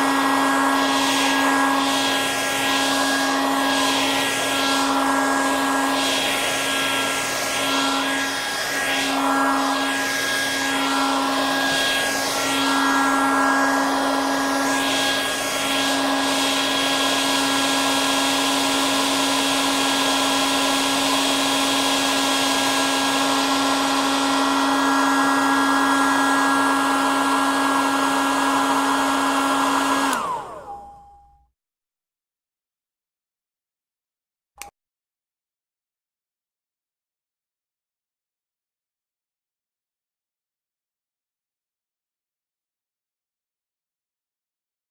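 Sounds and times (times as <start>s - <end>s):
hair dryer running: 0.0s - 31.1s.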